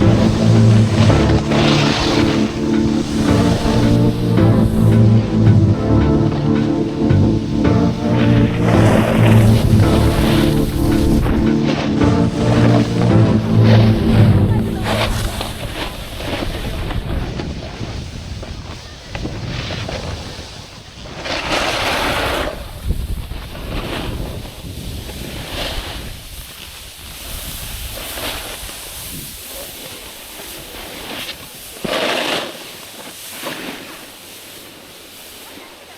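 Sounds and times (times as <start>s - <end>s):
wind rushing over microphone: 6.4s - 29.6s.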